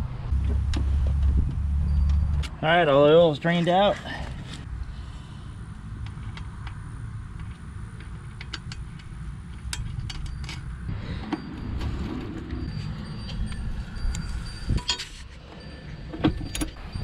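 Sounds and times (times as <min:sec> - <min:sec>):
wind rumbling on microphone: 0:00.0 - 0:02.5, 0:04.6 - 0:17.0
handling clicks and clinks: 0:07.4 - 0:10.8
faint thin ringing tones: 0:10.2 - 0:17.0.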